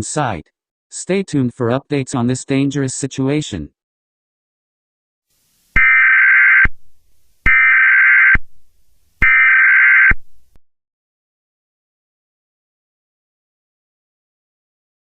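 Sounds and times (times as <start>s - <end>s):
buzzy warbling data tones: 5.8s - 6.7s, 7.5s - 8.4s.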